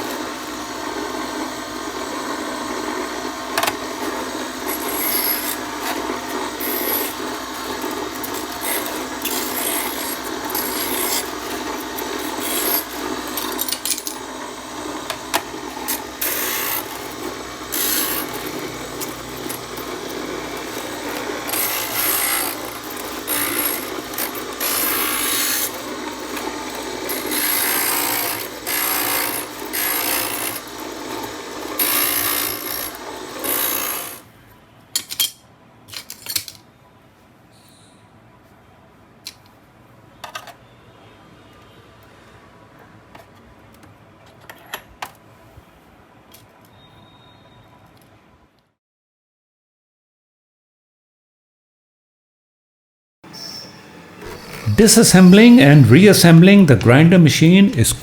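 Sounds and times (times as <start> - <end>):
grinder motor running: 0.0 - 34.2
glass rasping against grinder: 4.7 - 5.6, 6.6 - 7.2, 8.2 - 11.4, 12.0 - 14.1, 20.8 - 25.8.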